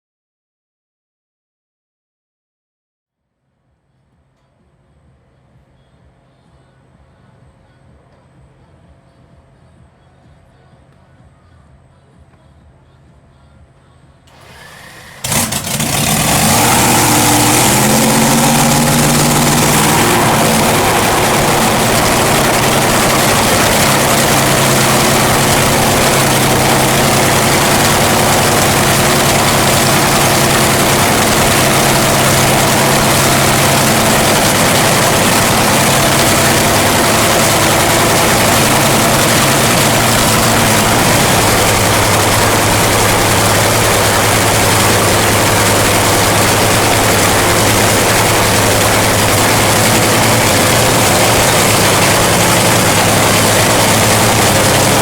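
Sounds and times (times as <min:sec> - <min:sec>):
dragster engine starting: 0:14.3 - 0:55.0
loud engine idling: 0:14.3 - 0:55.0.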